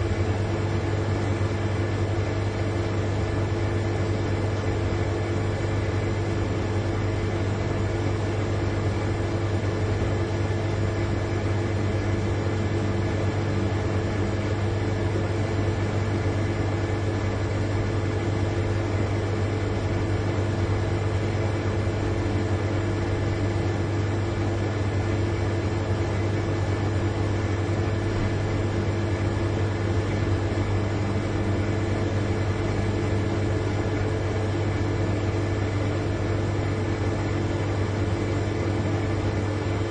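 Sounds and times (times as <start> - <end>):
refrigerator compressor humming: 0.0 - 39.9.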